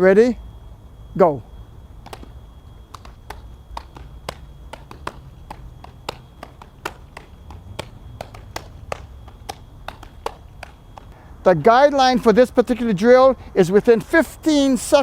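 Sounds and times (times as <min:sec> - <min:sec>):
balls smacking into leather gloves: 0:02.0 - 0:11.2.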